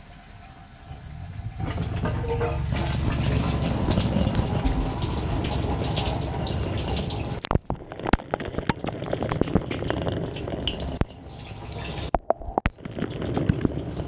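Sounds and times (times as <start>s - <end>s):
dishwasher water spraying: 0.0s - 7.4s
water drips and splashes: 0.0s - 14.0s.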